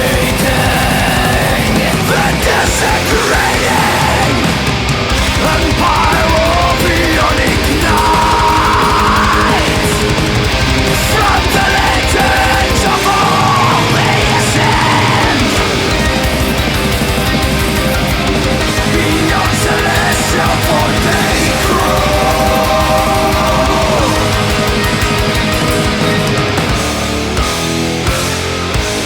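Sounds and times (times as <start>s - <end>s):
heavy metal music: 0.0s - 29.0s.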